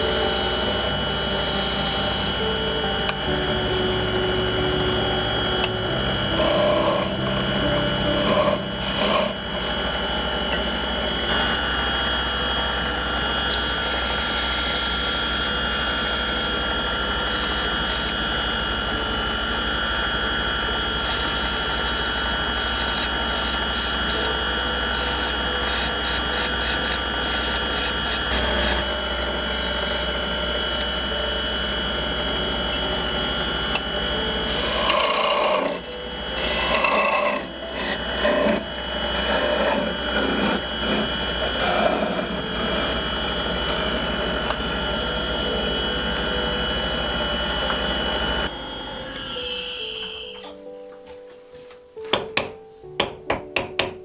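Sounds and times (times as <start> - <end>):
wood lathe humming and whining: 0.0 - 50.7
tool scraping spinning wood: 6.2 - 9.8, 13.3 - 18.2, 20.9 - 31.8, 33.7 - 44.6.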